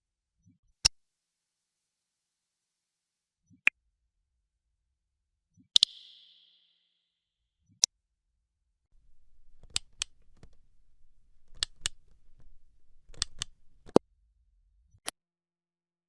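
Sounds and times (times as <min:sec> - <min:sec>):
button clicks: 0:09.0 - 0:14.0
faint low hum: 0:09.0 - 0:14.0.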